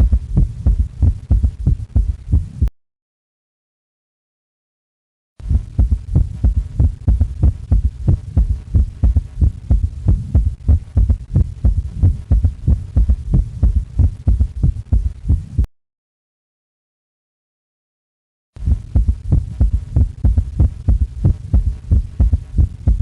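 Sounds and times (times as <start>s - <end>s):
galloping heartbeat thuds: 0.0s - 2.7s, 5.4s - 15.7s, 18.6s - 23.0s.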